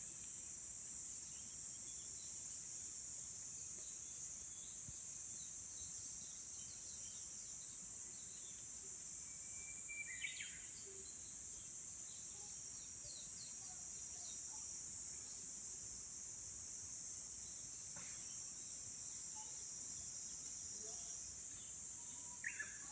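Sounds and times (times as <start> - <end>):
insects chirring: 0.0 - 22.9
bush warbler whistled song: 9.2 - 11.2, 22.2 - 22.9
faint bird chirps: 9.2 - 14.6, 20.8 - 22.9.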